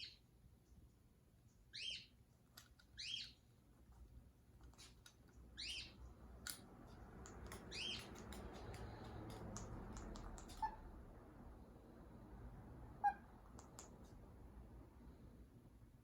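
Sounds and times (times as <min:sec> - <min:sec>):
parrot high chirps: 0:01.7 - 0:02.1, 0:03.0 - 0:03.4, 0:05.6 - 0:06.0, 0:07.7 - 0:08.1, 0:10.2 - 0:10.8, 0:13.0 - 0:13.8
light clicks: 0:06.3 - 0:10.6.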